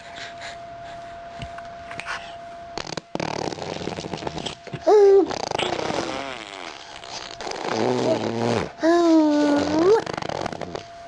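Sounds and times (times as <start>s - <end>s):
babies blowing raspberries: 2.8s - 10.8s
falling baby vocal: 4.8s - 6.3s, 7.9s - 10.3s.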